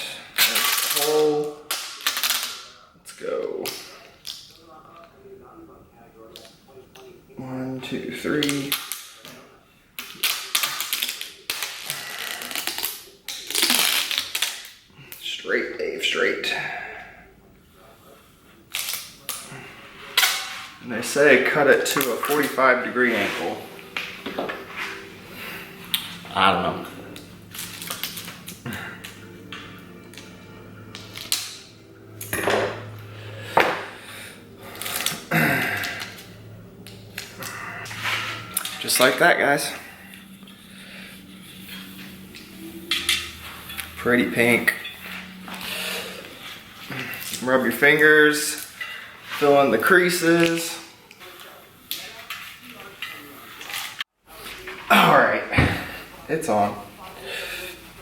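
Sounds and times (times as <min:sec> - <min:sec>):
tape crackling as pulled: 0:00.4 - 0:02.7, 0:10.0 - 0:14.8, 0:27.5 - 0:29.2.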